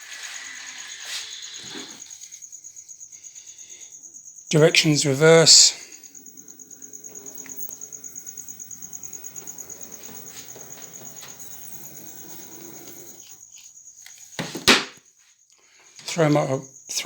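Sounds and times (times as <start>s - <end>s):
high-pitched whine: 4.5s - 13.4s
model locomotive pulsing rumble: 4.6s - 13.4s.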